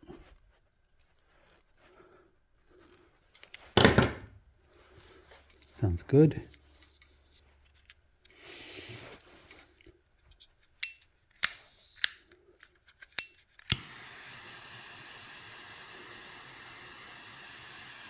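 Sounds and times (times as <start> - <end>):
torch igniter clicks: 10.8 - 12.3, 13.1 - 15.4
torch flame hissing: 13.2 - 18.0.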